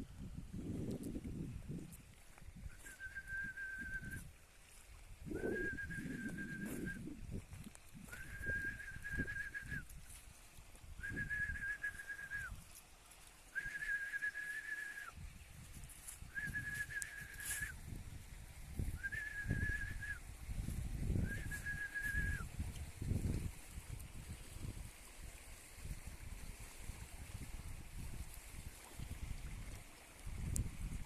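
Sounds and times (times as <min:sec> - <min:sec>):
long high whistle notes: 0:05.4 - 0:07.0, 0:13.5 - 0:15.1, 0:16.3 - 0:17.8.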